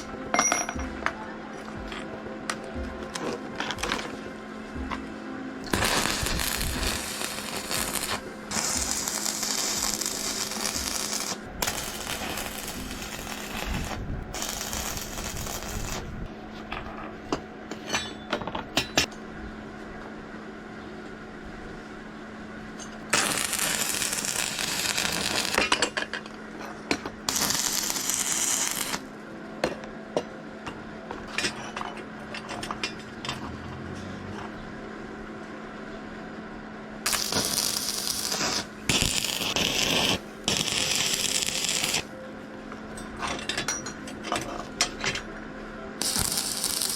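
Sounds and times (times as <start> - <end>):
hissing tool noise: 5.6 - 16.1, 23.1 - 25.7, 27.3 - 29.1, 37.1 - 42.1, 46.0 - 46.9.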